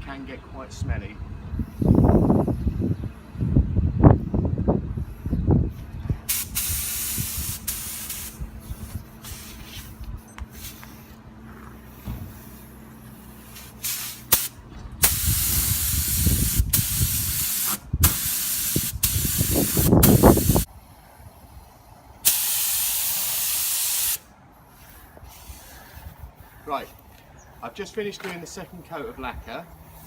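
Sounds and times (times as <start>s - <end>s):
air spray gun hissing: 6.3s - 9.9s, 13.5s - 20.7s, 22.2s - 24.3s.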